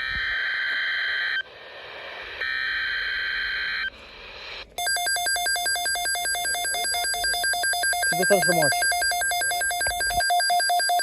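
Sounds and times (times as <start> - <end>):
buzzing digital data tones: 4.8 - 11.0
pulsing two-pitch beeping: 4.8 - 11.0.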